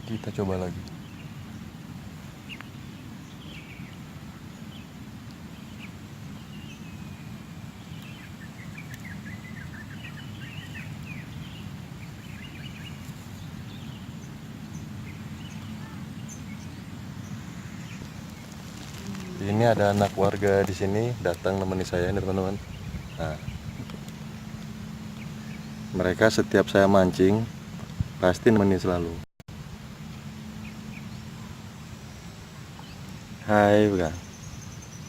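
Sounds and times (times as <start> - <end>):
small birds chirping: 0.0 - 29.2, 30.1 - 35.0
low outdoor rumble: 0.0 - 35.0.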